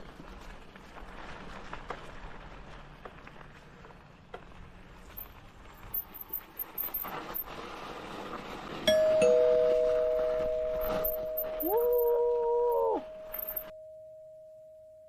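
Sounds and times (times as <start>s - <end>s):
bell ringing: 8.9s - 12.2s, 13.0s - 15.0s.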